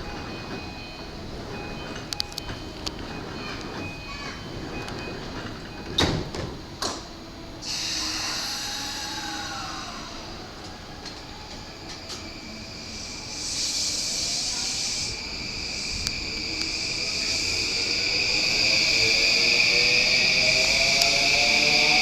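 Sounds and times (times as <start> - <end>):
electric train motor whine: 7.2 - 22.0
air brakes hissing: 7.6 - 22.0
steady high tone: 7.6 - 22.0.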